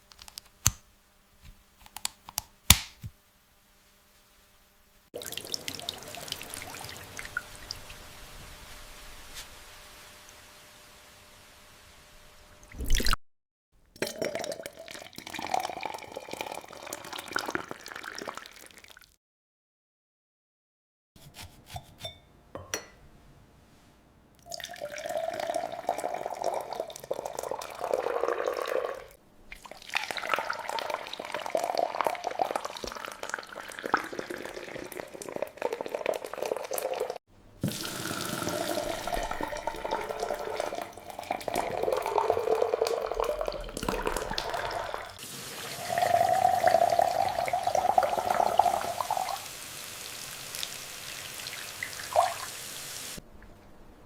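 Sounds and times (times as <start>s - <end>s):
liquid running and splashing: 27.7s - 53.2s.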